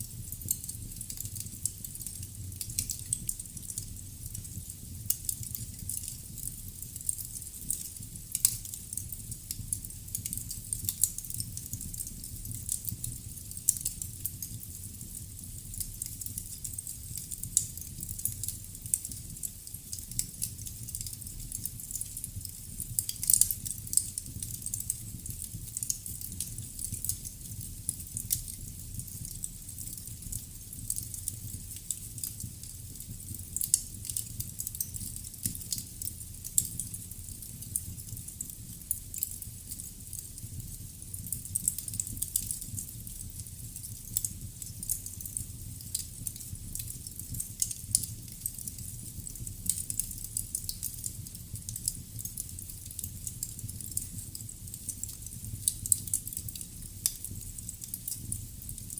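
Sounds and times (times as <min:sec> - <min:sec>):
embers crackling and popping: 0:00.0 - 0:58.9.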